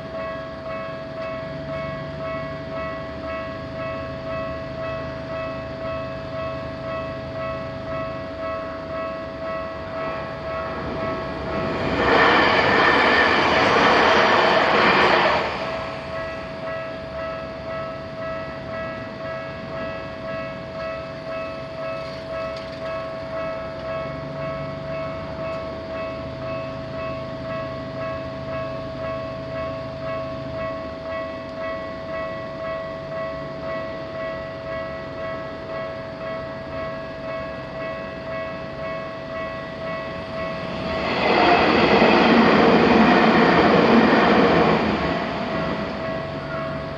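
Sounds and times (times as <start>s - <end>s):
level crossing alarm bell: 0.0s - 11.7s, 15.6s - 41.0s
train rushing past: 1.6s - 20.1s, 35.5s - 46.9s.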